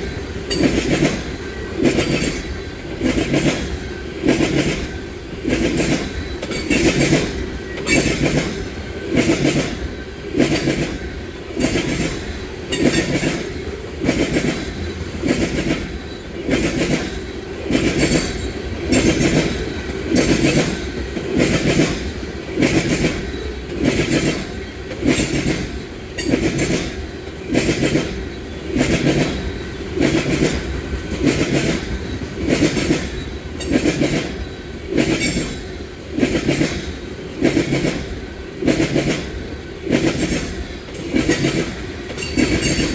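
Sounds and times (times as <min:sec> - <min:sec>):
train wheels clacking over rail joints: 0:00.0 - 0:42.9.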